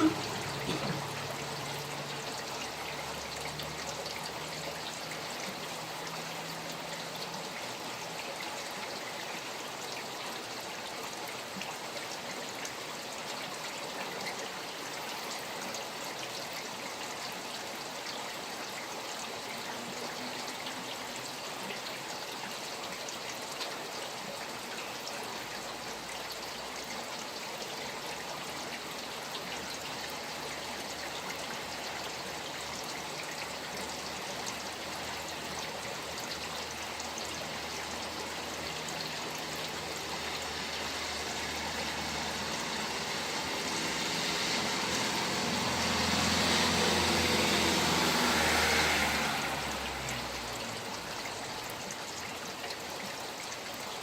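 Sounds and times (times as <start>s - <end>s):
raindrops pattering: 0.0s - 11.8s, 28.4s - 54.0s
flowing stream: 0.0s - 54.0s.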